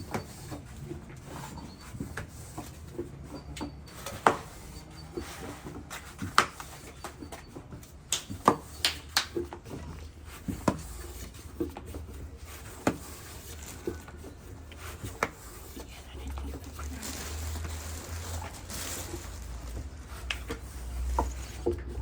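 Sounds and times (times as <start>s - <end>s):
sharp knocks and clicks: 2.0s - 13.0s.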